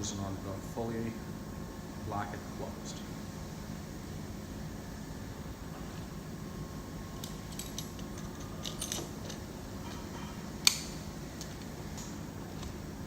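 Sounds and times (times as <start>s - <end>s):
pliers clicking on metal: 7.2s - 10.0s, 10.6s - 12.1s.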